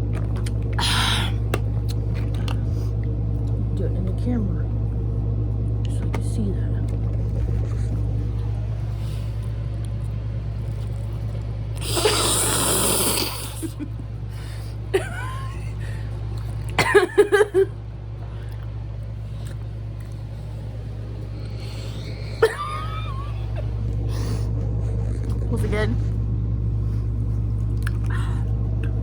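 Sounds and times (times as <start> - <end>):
mouth and chewing noises: 0.0 - 0.8, 1.4 - 2.6, 18.5 - 20.4, 24.8 - 25.5, 27.6 - 28.1
steady low hum: 0.0 - 29.0
person slurping: 11.8 - 13.8.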